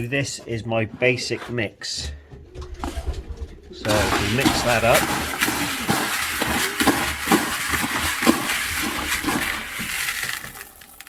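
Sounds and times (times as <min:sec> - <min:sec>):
grain seeds rustling and rattling: 0:03.8 - 0:11.0.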